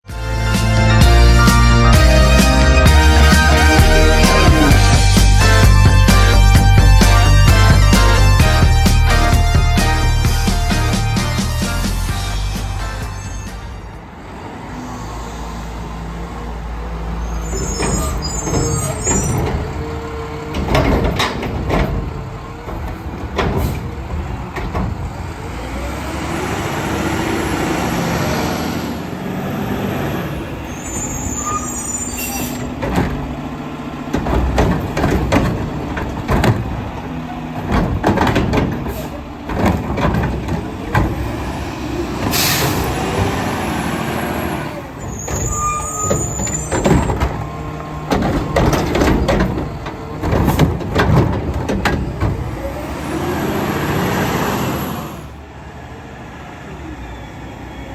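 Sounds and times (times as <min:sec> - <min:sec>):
diesel engine running and revving: 0:00.0 - 0:57.9
sharp bangs and clatter: 0:00.4 - 0:13.8, 0:17.5 - 0:28.0, 0:32.4 - 0:54.4
air brakes hissing: 0:17.1 - 0:24.0, 0:30.1 - 0:33.3, 0:38.8 - 0:39.4, 0:40.6 - 0:49.6.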